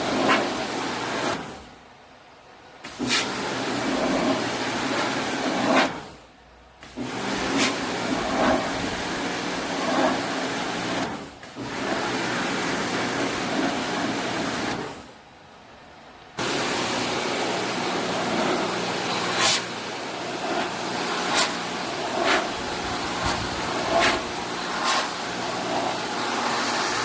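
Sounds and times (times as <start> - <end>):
rushing machine noise: 7.0 - 12.4, 16.4 - 27.0.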